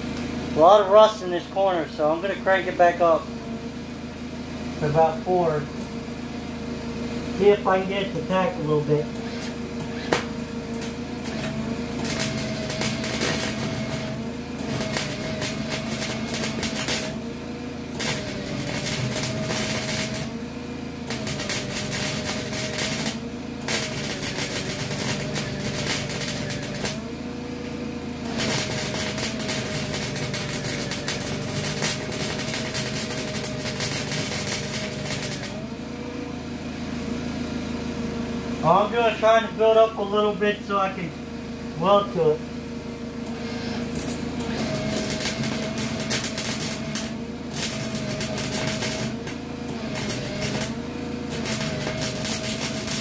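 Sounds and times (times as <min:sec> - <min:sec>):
welder arc crackling: 0:00.0 - 0:03.9, 0:04.6 - 0:35.8, 0:38.7 - 0:41.1, 0:43.0 - 0:53.0
steady hum: 0:00.0 - 0:35.6, 0:38.0 - 0:49.2.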